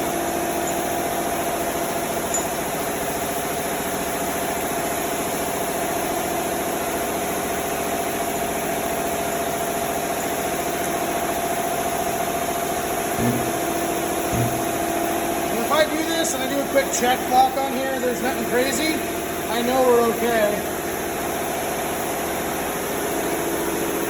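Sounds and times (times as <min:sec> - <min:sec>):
orbital sander humming: 0:13.2 - 0:15.0.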